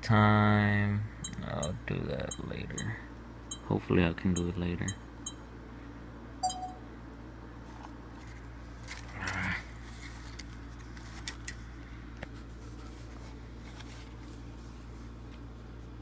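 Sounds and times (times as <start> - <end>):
short electronic beep: 6.4 - 6.8.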